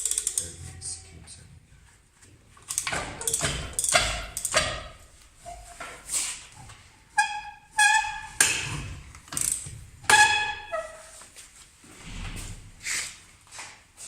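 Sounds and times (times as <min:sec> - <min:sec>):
metal tools clanking on metal: 0:02.7 - 0:04.9.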